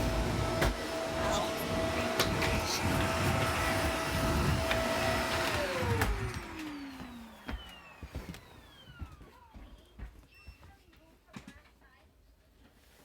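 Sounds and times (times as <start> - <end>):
vacuum cleaner motor whine: 0.0 - 10.3.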